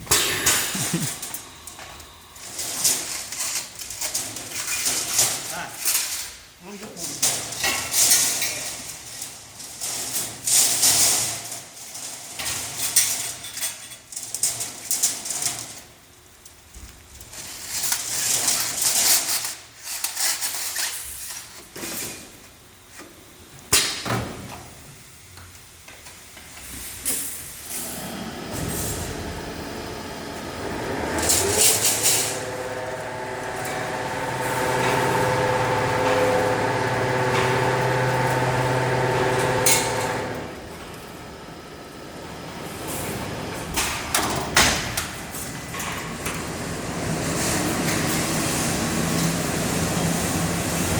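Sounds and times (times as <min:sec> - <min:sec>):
machine hissing bursts: 0:27.7 - 0:40.5
motor whining and humming: 0:27.8 - 0:43.5.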